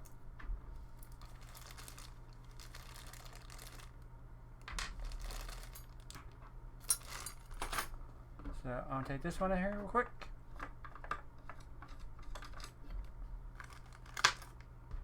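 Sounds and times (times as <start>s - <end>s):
low electrical hum: 0.0s - 15.0s
plastic parts rustling and clicking: 1.0s - 3.9s, 4.7s - 6.3s, 13.6s - 14.6s.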